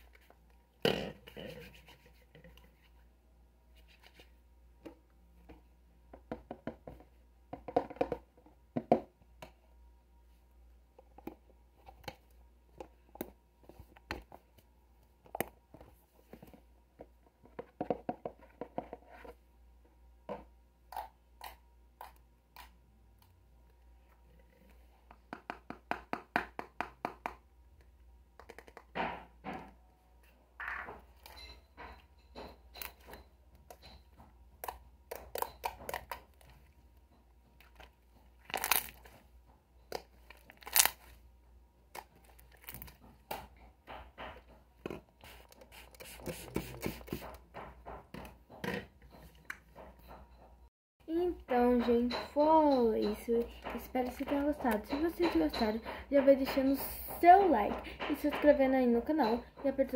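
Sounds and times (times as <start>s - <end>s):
crackles and crunches of squeezing: 37.6s - 39.2s, 39.9s - 41.2s, 41.9s - 43.0s.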